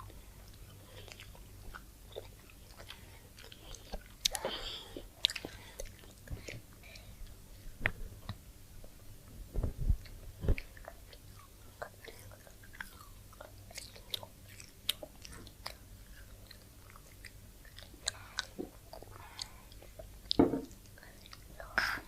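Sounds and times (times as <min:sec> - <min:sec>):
chewing and biting food: 0:00.0 - 0:07.1, 0:10.5 - 0:21.5.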